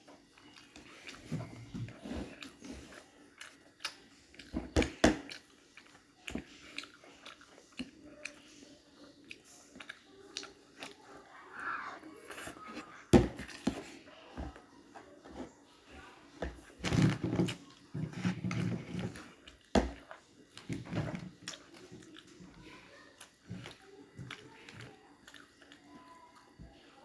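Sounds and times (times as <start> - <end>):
person chewing and biting food: 0.2 - 8.4.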